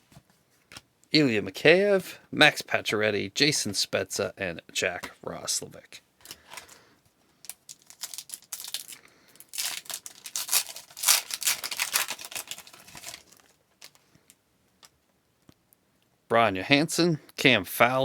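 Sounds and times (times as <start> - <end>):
card pack wrapper tearing: 7.5 - 14.0.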